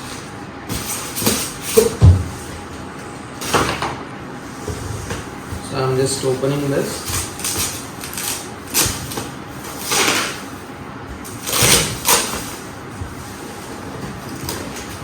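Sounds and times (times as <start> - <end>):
packaging rustling and scraping: 4.5 - 15.0.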